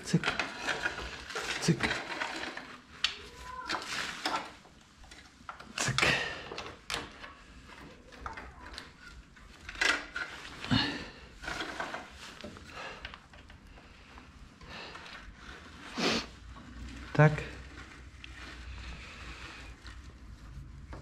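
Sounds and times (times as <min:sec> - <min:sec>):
roller chain clinking and rattling: 0:00.0 - 0:13.8.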